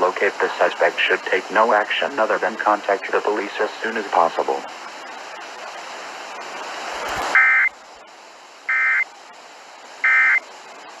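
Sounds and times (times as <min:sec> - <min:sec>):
radio hiss: 0:00.0 - 0:11.0
two-tone digital squawks: 0:07.4 - 0:07.7, 0:08.7 - 0:09.0, 0:10.0 - 0:10.4.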